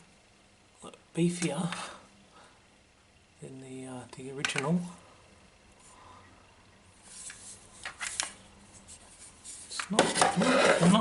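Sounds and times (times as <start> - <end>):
soft rubs: 7.0 - 7.8, 8.6 - 9.8.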